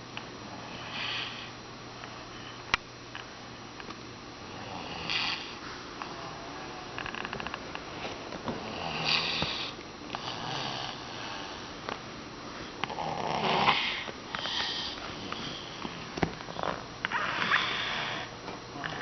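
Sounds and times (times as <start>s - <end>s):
person snoring rasping breaths: 8.6s - 11.7s, 12.9s - 15.8s, 16.5s - 19.0s.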